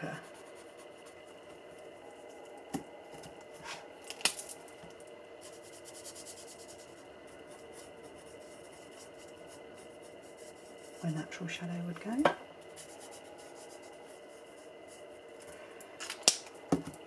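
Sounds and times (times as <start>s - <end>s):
marker rubbing on card: 5.4s - 11.1s, 12.8s - 15.1s.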